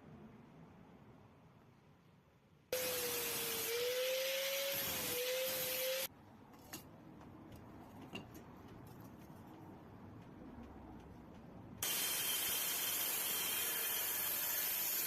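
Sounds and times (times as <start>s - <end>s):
power tool motor whine: 2.8s - 6.1s, 11.8s - 15.0s.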